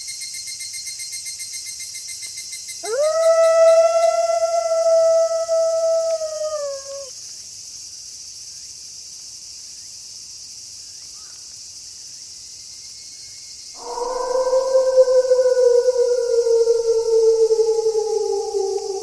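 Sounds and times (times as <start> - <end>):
wolf howling: 2.8 - 7.1, 13.8 - 19.0.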